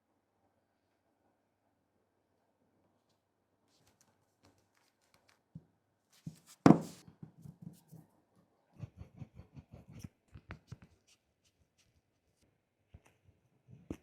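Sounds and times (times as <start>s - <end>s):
sharp knock: 6.7s - 7.0s.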